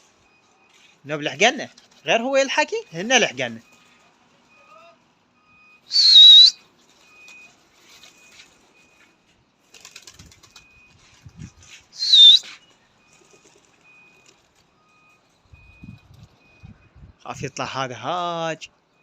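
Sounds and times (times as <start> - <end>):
loud shrill whistles: 5.9 - 6.6, 12.0 - 12.6.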